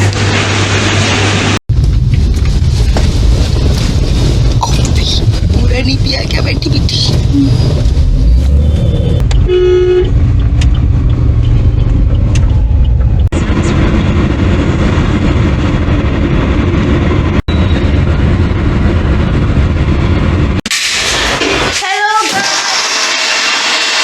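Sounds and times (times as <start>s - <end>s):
road traffic rumble: 0.0s - 21.7s
car horn honking: 9.4s - 10.2s.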